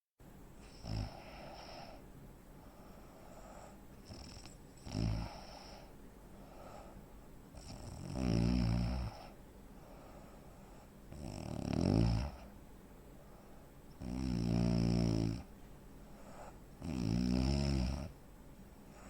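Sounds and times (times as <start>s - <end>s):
soft breathing: 0.6s - 7.7s, 9.0s - 11.1s, 12.3s - 14.0s, 15.9s - 16.8s
man snoring heavily: 0.7s - 2.0s, 4.1s - 5.8s, 7.6s - 9.3s, 11.1s - 12.5s, 14.0s - 15.5s, 16.8s - 18.1s.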